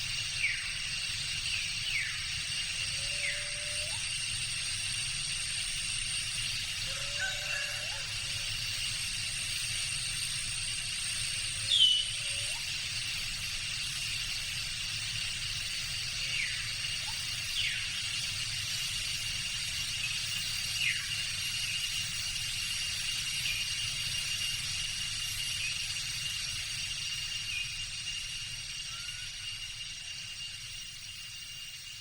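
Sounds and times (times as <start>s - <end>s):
high-pitched insect drone: 0.0s - 32.0s.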